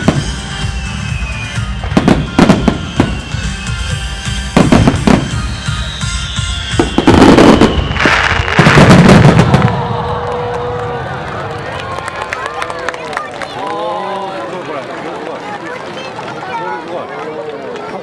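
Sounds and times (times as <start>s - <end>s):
background music: 0.0s - 8.8s
fireworks crackling: 0.0s - 16.9s.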